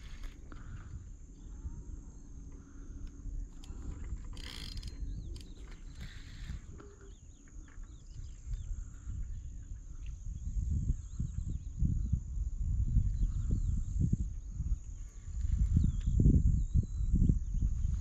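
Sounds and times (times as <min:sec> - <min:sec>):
rustling hiss: 0:00.0 - 0:01.2
small birds chirping: 0:00.0 - 0:12.2, 0:12.9 - 0:18.0
wind rumble on microphone: 0:00.0 - 0:18.0.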